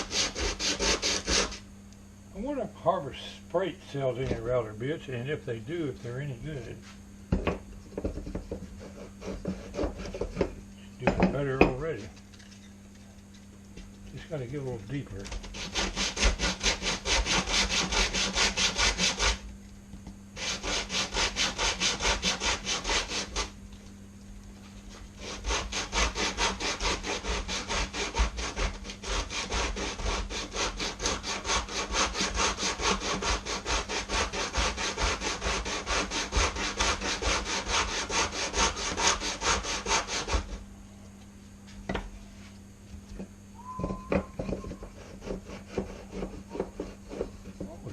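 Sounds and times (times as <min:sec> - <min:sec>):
sanding block rubbing wood: 0:00.0 - 0:01.6, 0:15.5 - 0:19.4, 0:20.4 - 0:23.5, 0:24.9 - 0:40.6, 0:44.8 - 0:47.6.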